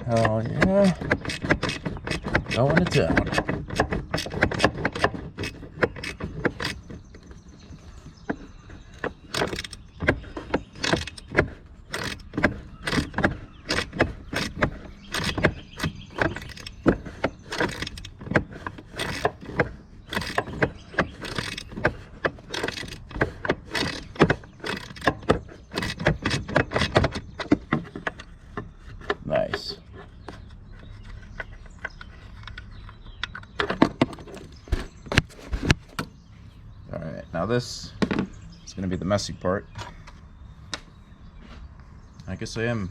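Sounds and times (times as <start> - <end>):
hand ratchet clicking: 0.2 - 7.0, 9.0 - 27.2.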